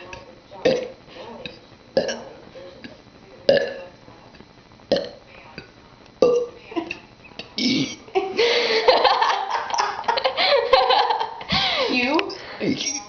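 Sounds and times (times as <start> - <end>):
woman burping: 0.6 - 1.0, 2.0 - 2.2, 3.5 - 3.8, 4.9 - 5.2, 6.2 - 7.0, 7.6 - 8.2.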